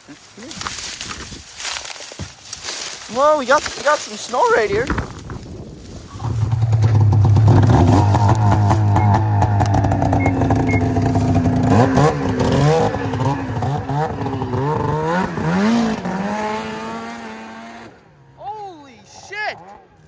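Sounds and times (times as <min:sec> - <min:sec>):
rattling clatter: 0:04.7 - 0:16.2
snowmobile engine revving: 0:06.1 - 0:18.4.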